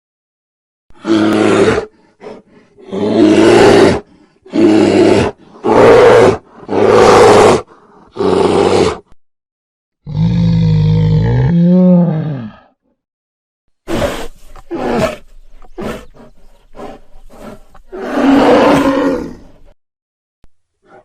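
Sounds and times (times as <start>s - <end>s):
bear growling: 1.0s - 9.1s.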